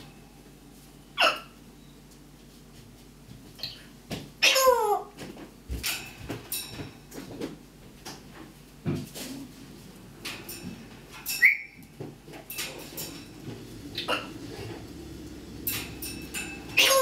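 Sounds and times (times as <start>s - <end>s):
parrot whistling: 11.4s - 11.8s.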